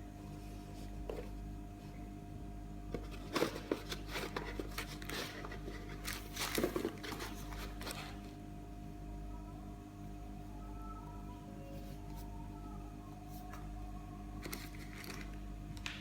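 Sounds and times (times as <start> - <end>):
steady low hum: 0.0 - 16.0
packaging rustling and crackling: 2.9 - 8.4, 14.4 - 16.0.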